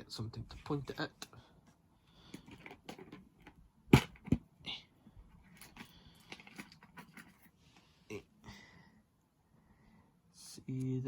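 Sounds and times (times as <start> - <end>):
plastic toy rustling and clicking: 5.5 - 7.5.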